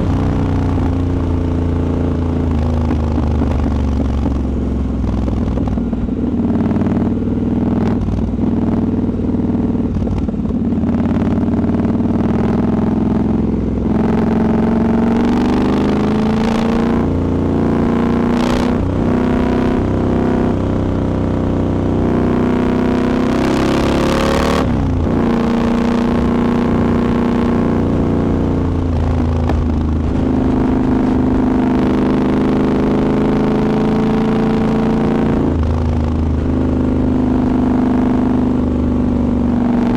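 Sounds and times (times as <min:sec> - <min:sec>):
motorcycle engine changing gear: 0:00.0 - 0:13.0.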